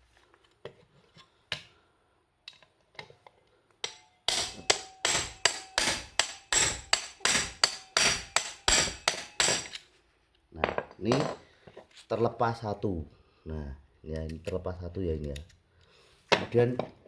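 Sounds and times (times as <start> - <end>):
hammer striking metal screwdriver: 3.8 - 9.8.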